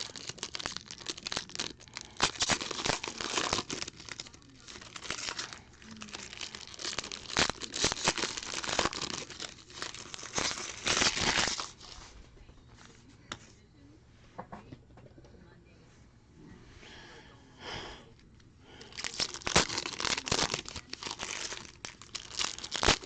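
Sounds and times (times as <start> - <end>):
card pack wrappers crinkling: 0.0 - 12.0, 18.7 - 23.0.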